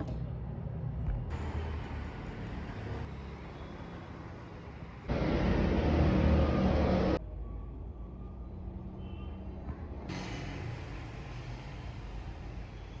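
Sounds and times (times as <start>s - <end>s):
passing vehicles hum: 0.2s - 7.6s.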